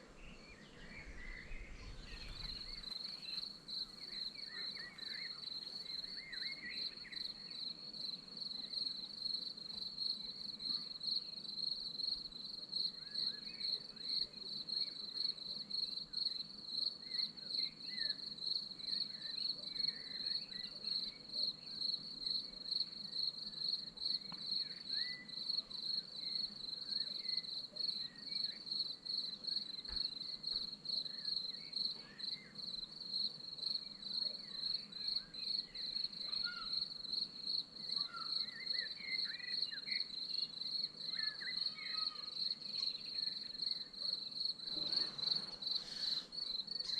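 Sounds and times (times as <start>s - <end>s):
crickets trilling: 23.1s - 46.9s.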